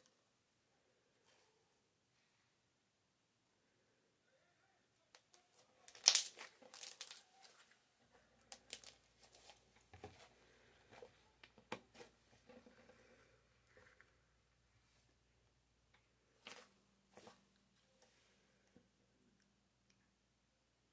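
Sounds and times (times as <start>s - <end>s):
slime crackling and popping: 5.9s - 7.3s.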